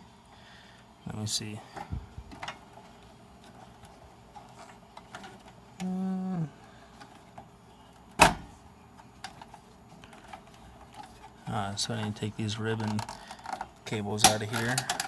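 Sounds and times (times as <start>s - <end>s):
person humming: 5.8s - 6.6s
power supply clicks and rattles: 12.0s - 15.0s.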